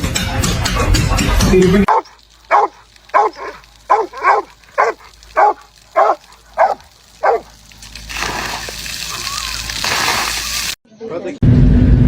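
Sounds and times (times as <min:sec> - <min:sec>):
dog barking: 0:01.9 - 0:07.6.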